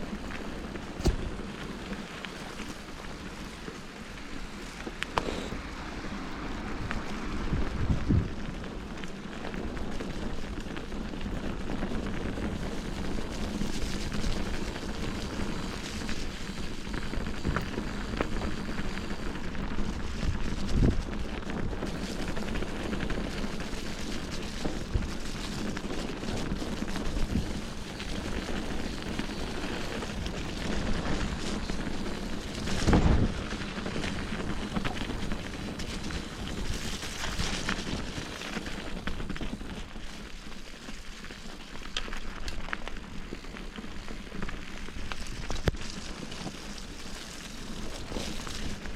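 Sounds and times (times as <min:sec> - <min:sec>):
bicycle tyres rolling on trail: 0:00.0 - 0:48.9
bike knocking over bumps: 0:00.2 - 0:02.9.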